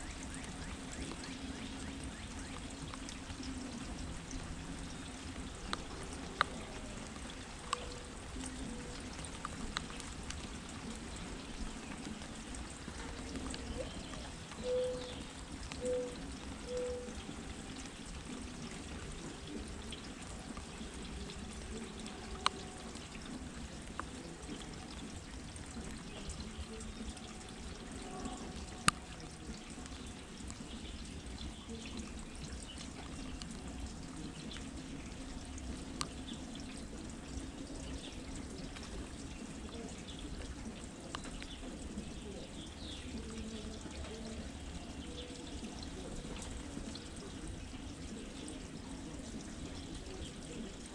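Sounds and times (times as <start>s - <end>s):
rain with water pouring: 0.0s - 50.9s
sharp drips: 0.0s - 50.9s.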